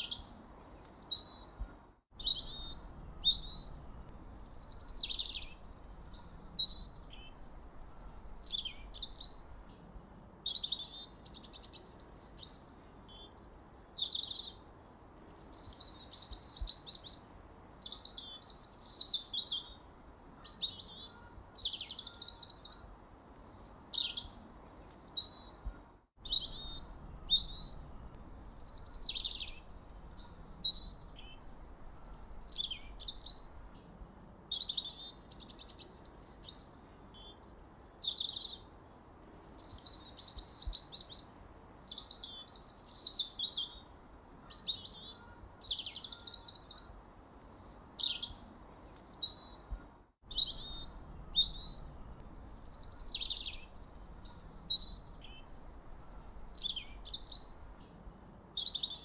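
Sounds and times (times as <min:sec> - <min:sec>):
faint background hiss: 0:00.0 - 0:59.0
birds chirping and whistling: 0:26.2 - 0:33.5, 0:50.3 - 0:57.6.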